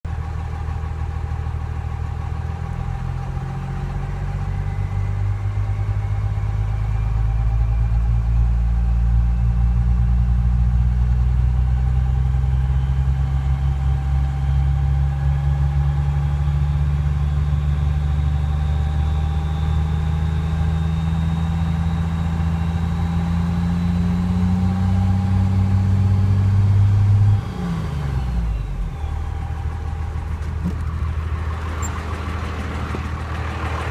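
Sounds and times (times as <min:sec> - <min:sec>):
diesel engine running: 0:00.1 - 0:33.9
engine ticking: 0:28.9 - 0:33.9.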